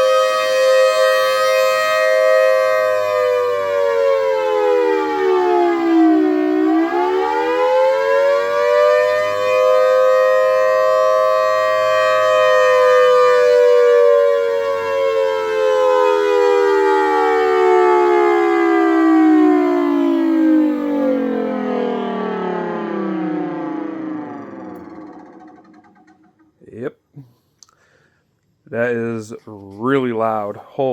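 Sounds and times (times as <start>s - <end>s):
siren winding two tones: 0.0s - 26.4s.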